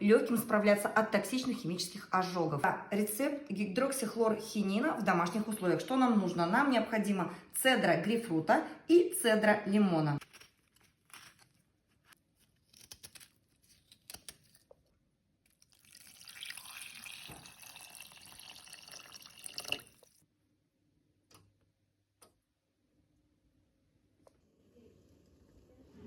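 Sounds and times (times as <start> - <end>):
water running from a tap: 15.7 - 20.2.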